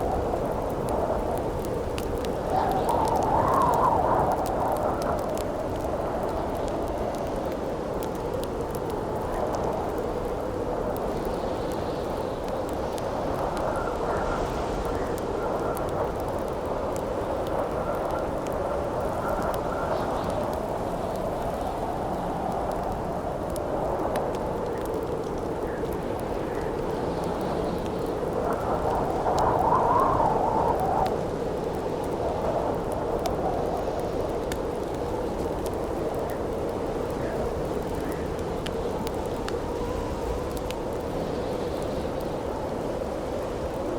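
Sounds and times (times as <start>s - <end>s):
campfire crackling and popping: 0.0s - 43.9s
howling wind: 0.0s - 43.9s.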